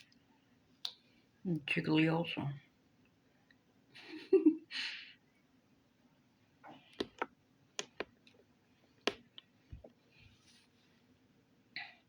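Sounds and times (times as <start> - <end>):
slime squelching: 6.9 - 8.3
wet clicks and pops: 7.0 - 8.4, 9.1 - 9.9.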